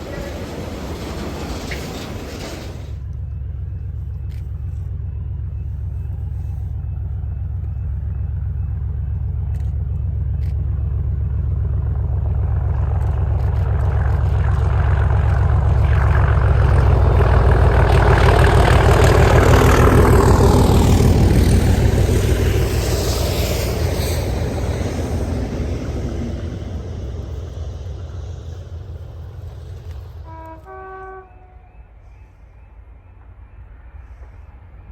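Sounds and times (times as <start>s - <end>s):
diesel train engine throbbing: 0.0s - 34.9s
train wheel and rail noise: 0.0s - 34.9s.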